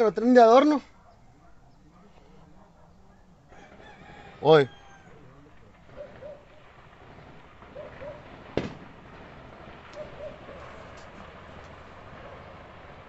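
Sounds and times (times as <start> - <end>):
distant gunshots: 3.6 - 13.0
bird hooting: 5.9 - 6.5, 7.7 - 8.2, 10.0 - 10.9.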